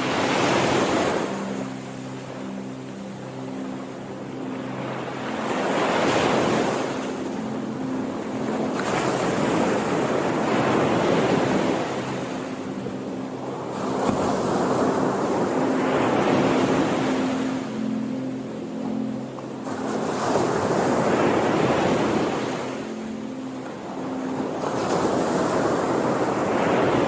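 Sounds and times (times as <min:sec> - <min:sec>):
faint low drone: 0:00.0 - 0:27.0
sea waves breaking: 0:00.0 - 0:27.0.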